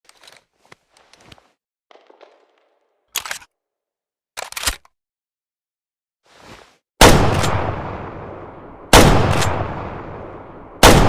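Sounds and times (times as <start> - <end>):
rifle slide metallic clacks: 4.4 - 4.9.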